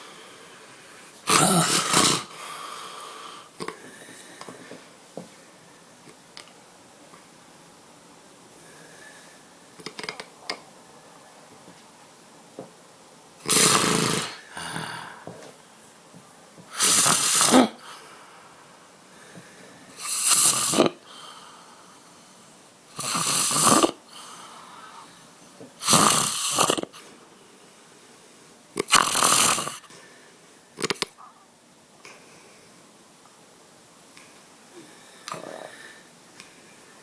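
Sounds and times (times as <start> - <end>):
person snoring loudly: 1.3 - 2.5, 13.4 - 15.4, 16.7 - 18.0, 20.0 - 21.2, 23.0 - 24.4, 25.8 - 27.0, 28.8 - 29.8
person snorting: 1.3 - 2.9, 13.4 - 15.5, 16.7 - 18.1, 20.0 - 21.3, 23.0 - 24.4, 25.8 - 27.0, 28.8 - 29.9
soft breaths: 2.2 - 5.9, 8.6 - 9.6, 17.7 - 20.1, 21.0 - 23.2, 24.0 - 25.4, 34.2 - 37.0.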